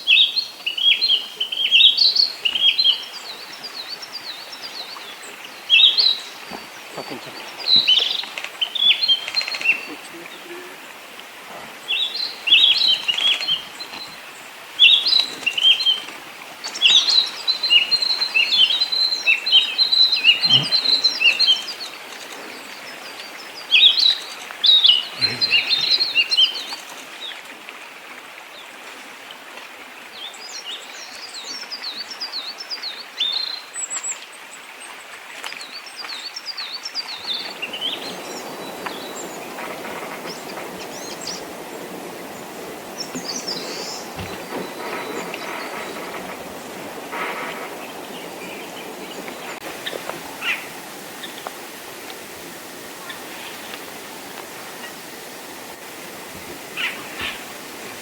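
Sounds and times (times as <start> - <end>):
small songbirds chirping and trilling: 11.8 - 27.4, 35.5 - 51.6
steady background hiss: 36.4 - 58.0.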